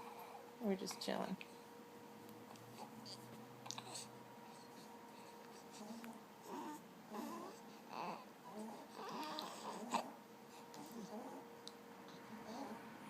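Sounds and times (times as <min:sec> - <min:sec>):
faint steady hum: 0:00.0 - 0:13.0
newborn baby grunting: 0:02.7 - 0:04.1, 0:05.6 - 0:11.5, 0:12.1 - 0:12.9.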